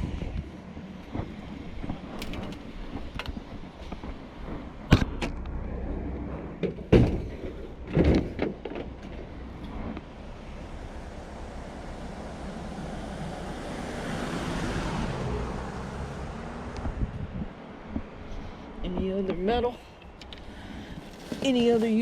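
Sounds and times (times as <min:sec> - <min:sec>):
low rumble: 0:00.0 - 0:19.2
objects knocking and clattering: 0:02.2 - 0:03.4, 0:06.6 - 0:09.3.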